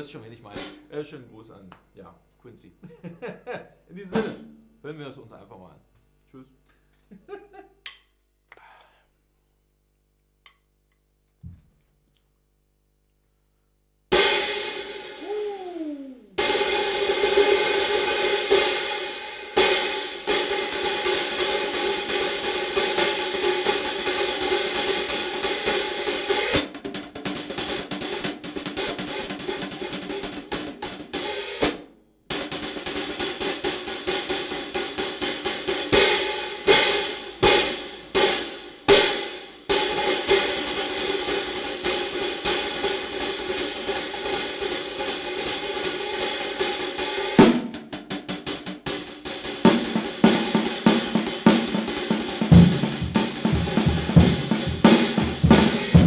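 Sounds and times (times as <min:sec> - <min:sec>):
hi-hats played with sticks: 0:04.1 - 0:04.8, 0:14.1 - 0:56.0
open hi-hat strokes ringing: 0:48.8 - 0:56.0
low drum hits: 0:52.5 - 0:56.0.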